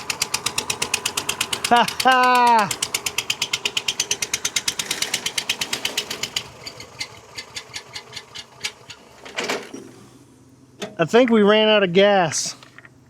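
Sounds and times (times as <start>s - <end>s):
small gasoline engine chugging: 0.0s - 10.2s.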